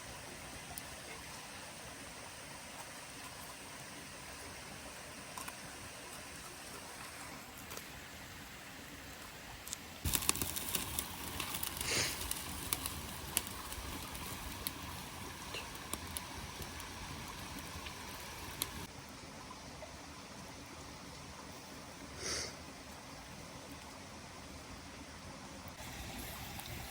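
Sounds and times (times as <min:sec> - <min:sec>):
fire hiss: 0:07.6 - 0:18.9, 0:22.2 - 0:22.6, 0:25.8 - 0:26.9
campfire crackling and popping: 0:09.6 - 0:18.9, 0:25.8 - 0:26.9.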